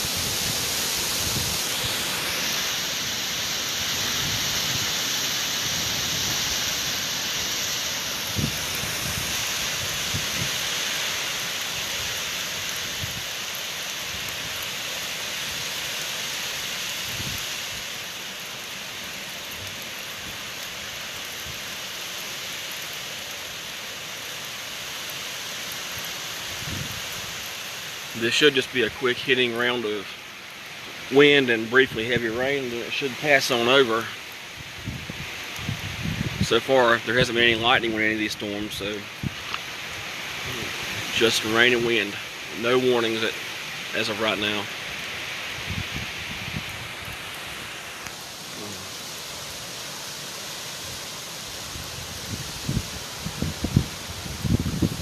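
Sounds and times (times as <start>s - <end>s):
wind buffeting microphone: 0.0s - 2.6s, 8.3s - 10.6s, 26.6s - 27.0s, 34.6s - 37.7s, 45.6s - 47.2s, 51.7s - 55.0s
heavy rain pouring: 0.0s - 55.0s.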